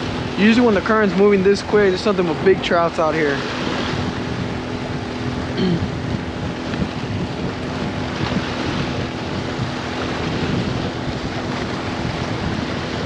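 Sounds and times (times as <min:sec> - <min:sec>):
water washing against rocks: 0:00.0 - 0:05.6
low hum: 0:00.0 - 0:13.0
wind buffeting microphone: 0:00.0 - 0:13.0.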